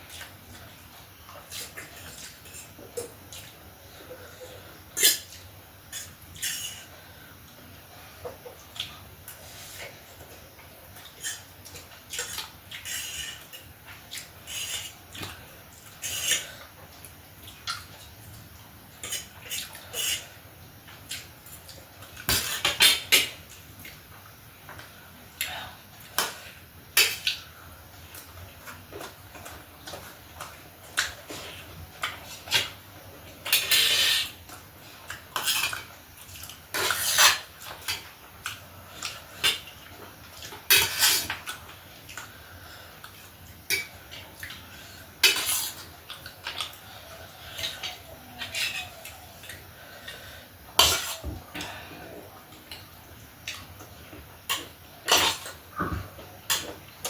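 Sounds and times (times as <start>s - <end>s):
cutlery scraping a plate: 33.5s - 34.4s, 36.8s - 38.0s, 45.2s - 45.8s.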